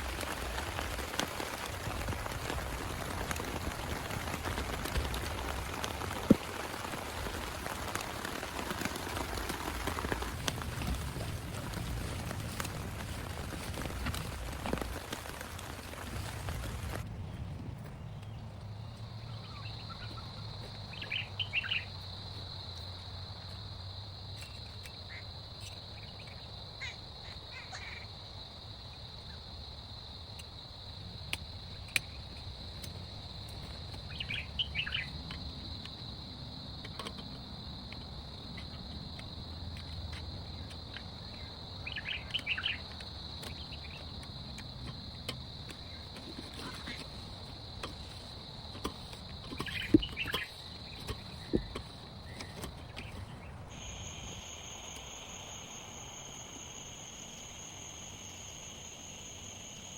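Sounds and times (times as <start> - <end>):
insect drone: 0.0 - 17.4, 18.0 - 59.9
bird chirps: 41.8 - 42.9.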